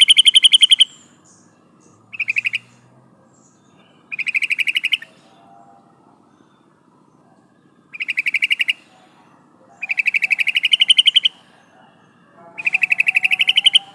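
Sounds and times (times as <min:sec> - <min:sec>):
bird chattering rattle: 0:00.0 - 0:01.0, 0:02.1 - 0:02.7, 0:04.1 - 0:05.1, 0:09.8 - 0:11.4, 0:12.6 - 0:13.9.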